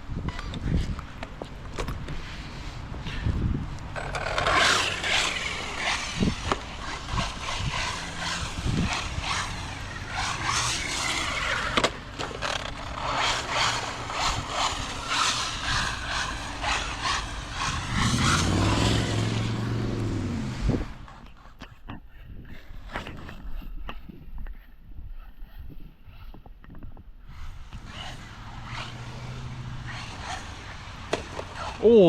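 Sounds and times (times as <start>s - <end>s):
electric motor whine: 3.9s - 21.2s
tyres hissing on wet concrete: 4.3s - 11.9s.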